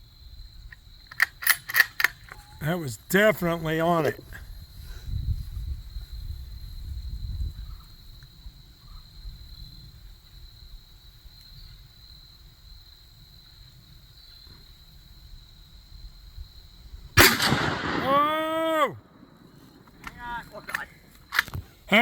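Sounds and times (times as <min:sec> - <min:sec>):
high insect drone: 0:00.0 - 0:17.2
wind rumbling on microphone: 0:04.2 - 0:18.2
loud gunshot: 0:17.2 - 0:18.9.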